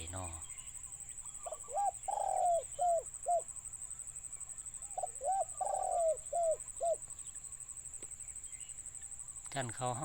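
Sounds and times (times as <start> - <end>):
dove cooing: 1.3 - 3.6, 4.8 - 7.1.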